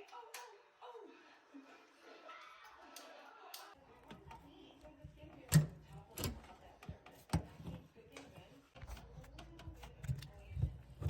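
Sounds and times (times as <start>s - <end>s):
knocks and clicks on metal parts: 4.0s - 7.9s.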